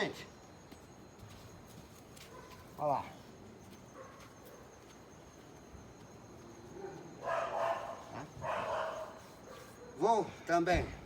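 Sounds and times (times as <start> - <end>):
dog barking: 2.3 - 2.6, 6.8 - 10.0.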